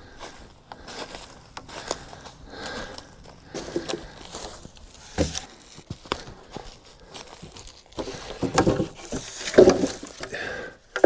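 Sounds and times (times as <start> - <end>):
footsteps on forest floor: 0.0 - 11.0
short knocks: 5.0 - 5.5.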